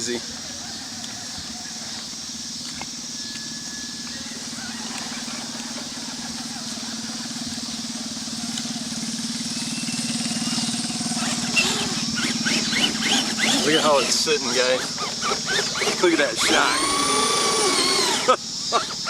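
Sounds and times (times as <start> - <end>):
toy truck motor whirring: 4.6 - 7.6, 8.4 - 19.0.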